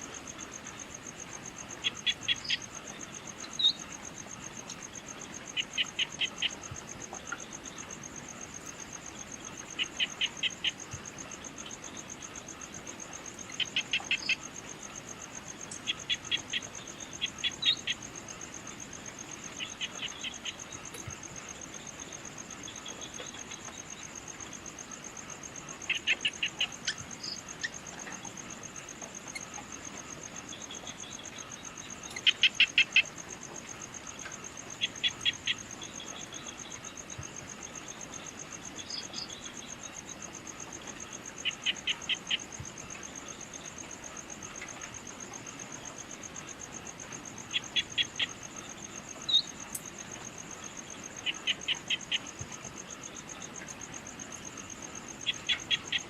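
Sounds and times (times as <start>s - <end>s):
crickets trilling: 0.0s - 56.0s.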